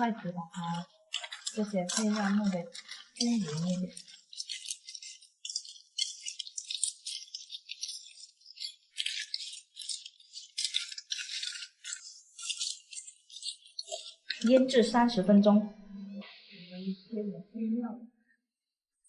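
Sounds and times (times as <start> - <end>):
shells clattering and scraping in bowl: 0.0 - 15.2.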